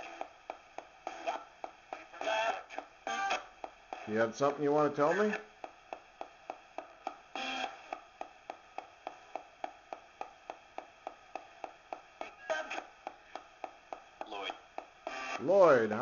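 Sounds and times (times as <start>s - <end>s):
snatches of broadcast audio: 0.0s - 16.0s
radio sweeping through stations: 4.0s - 5.4s, 12.2s - 12.9s.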